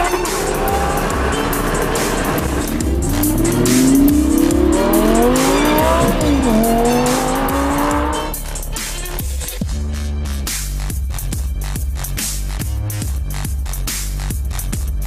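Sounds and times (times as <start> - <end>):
car engine accelerating: 0.0 - 8.6
music with steady beat: 0.0 - 15.0.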